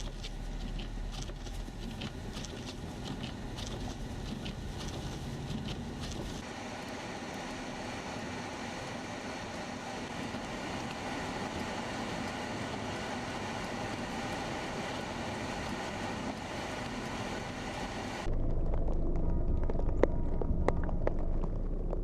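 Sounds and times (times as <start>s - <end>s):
deep rumble: 0.0s - 6.5s, 9.6s - 22.0s
road and wind noise: 0.0s - 22.0s
vehicle engine hum: 0.0s - 22.0s.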